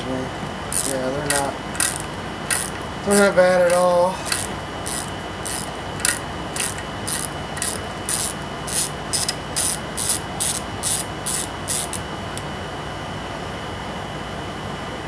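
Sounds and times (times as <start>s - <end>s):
hand ratchet clicking: 0.7s - 12.5s.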